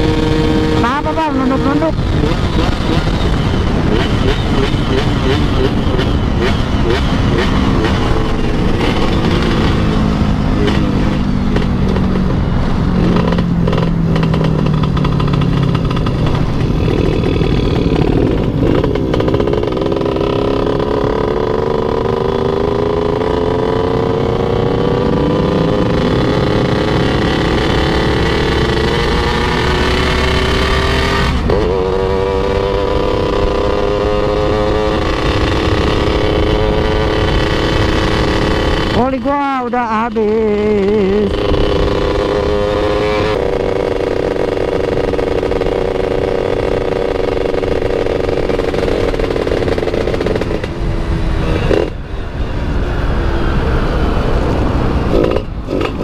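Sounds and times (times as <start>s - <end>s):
motorcycle engine: 0.0s - 56.0s
person complaining: 0.8s - 2.4s, 39.0s - 41.4s
wind noise on microphone: 40.5s - 56.0s.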